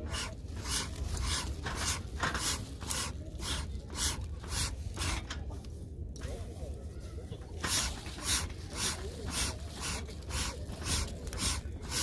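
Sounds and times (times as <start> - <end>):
regular rasping strokes: 0.0 - 5.4, 7.6 - 12.0
low steady rumble: 0.0 - 12.0.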